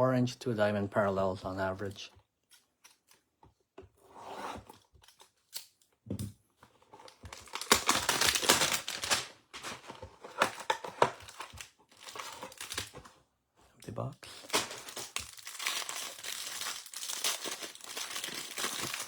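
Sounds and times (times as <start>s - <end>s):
cardboard tearing: 7.0s - 13.1s, 14.3s - 19.0s
wrapping crackling: 7.1s - 13.0s, 14.2s - 19.0s.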